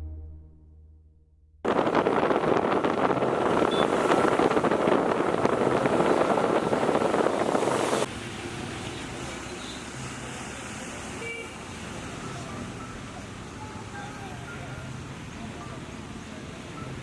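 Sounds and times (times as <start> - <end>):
wind buffeting microphone: 1.6 - 8.1
road noise: 1.6 - 17.0
traffic noise: 1.7 - 17.0.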